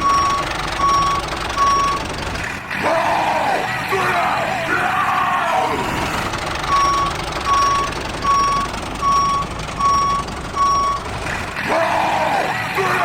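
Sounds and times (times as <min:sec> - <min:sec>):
reversing alarm beeping: 0:00.0 - 0:02.2, 0:06.6 - 0:11.1
yelling music: 0:02.7 - 0:06.9, 0:11.5 - 0:13.0.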